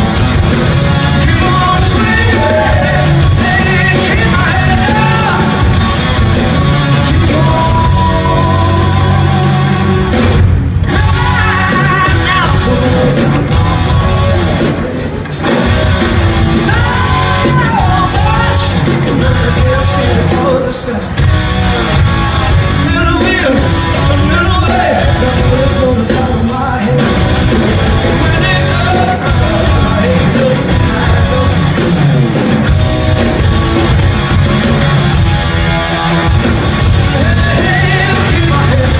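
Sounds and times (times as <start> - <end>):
live rock band: 0.0 - 38.9
singer belting: 1.0 - 5.7, 6.8 - 10.2.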